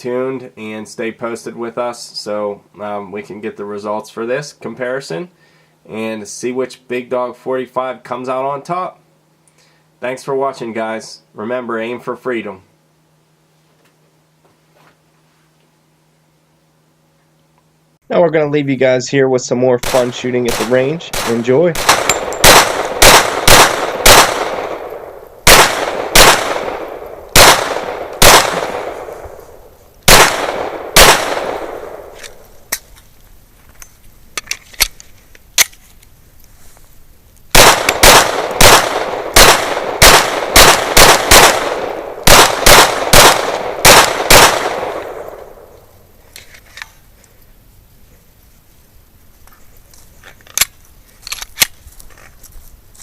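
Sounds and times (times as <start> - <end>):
pistol shots echoing: 19.8 - 32.4, 37.6 - 45.7.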